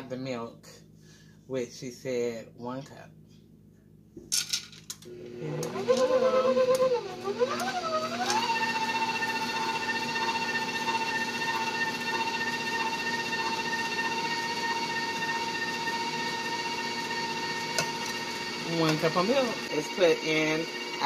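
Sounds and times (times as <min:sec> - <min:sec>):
electric mixer whining: 0:05.1 - 0:21.0.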